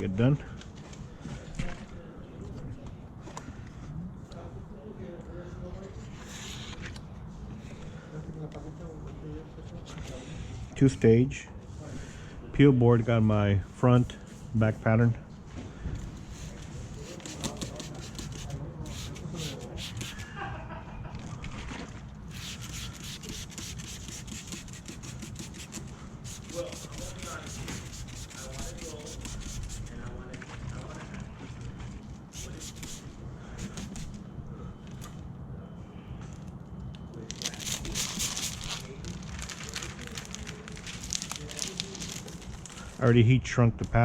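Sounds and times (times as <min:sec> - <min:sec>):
film rubbing and scraping: 0:16.0 - 0:20.4, 0:22.3 - 0:30.0, 0:32.3 - 0:34.2, 0:37.3 - 0:43.0.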